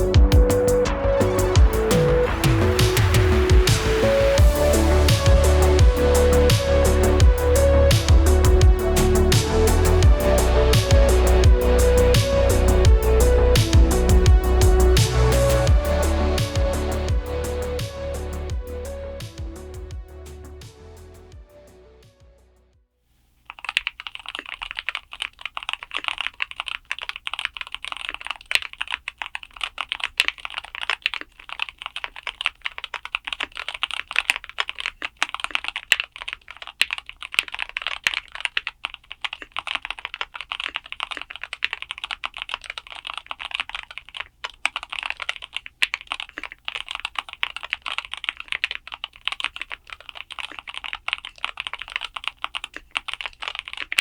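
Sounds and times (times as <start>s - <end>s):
fast clacky keyboard typing: 23.5s - 54.0s.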